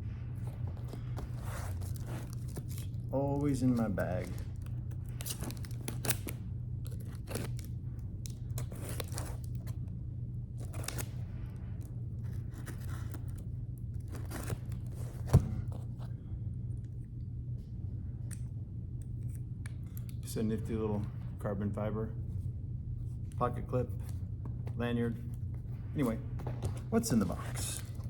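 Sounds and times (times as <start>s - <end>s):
steady low hum: 0.0s - 28.0s
cardboard tearing and scraping: 0.7s - 9.8s, 10.6s - 11.2s, 12.2s - 16.0s
knife slitting tape and cardboard: 0.9s - 4.4s, 5.1s - 9.7s, 10.6s - 11.2s.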